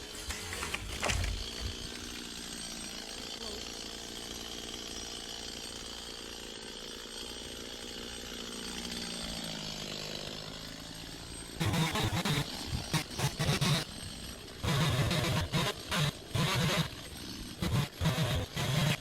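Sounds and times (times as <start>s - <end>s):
chainsaw running and revving: 0.0s - 19.0s.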